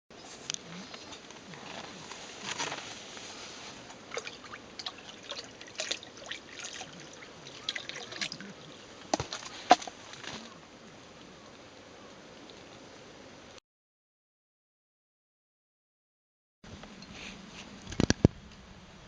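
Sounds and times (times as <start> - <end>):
water trickling and dripping: 4.0 - 9.2.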